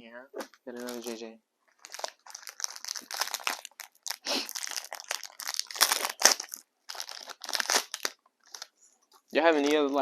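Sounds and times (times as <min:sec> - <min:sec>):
card packs rustling and crinkling: 0:00.4 - 0:01.2, 0:01.8 - 0:10.0.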